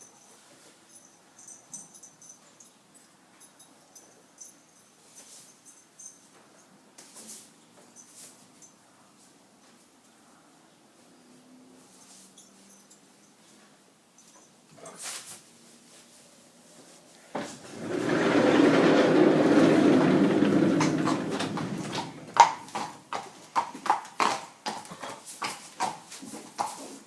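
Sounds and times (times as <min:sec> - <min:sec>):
horse hooves knocking: 0:17.4 - 0:27.0.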